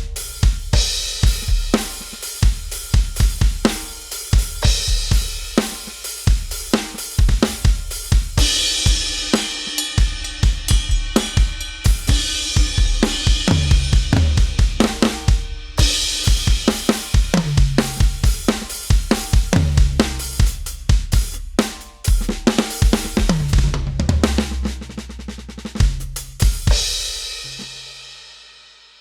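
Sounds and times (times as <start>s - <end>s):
drum kit pattern: 0.0s - 27.9s
cymbals ringing: 8.6s - 14.0s.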